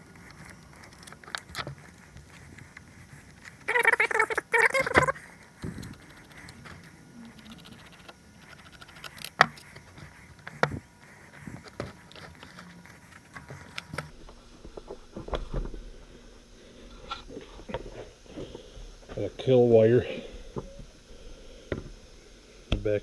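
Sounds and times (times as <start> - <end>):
hand tools clicking and knocking: 0.0 - 14.1.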